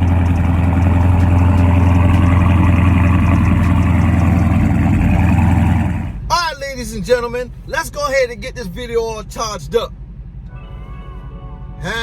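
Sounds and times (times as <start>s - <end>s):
car engine low rumble: 0.0s - 12.0s.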